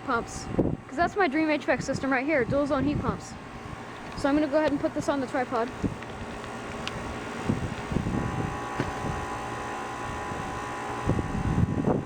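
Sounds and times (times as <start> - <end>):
heat pump compressor and fan drone: 0.0 - 12.0
low thumps and rustles: 5.7 - 9.3.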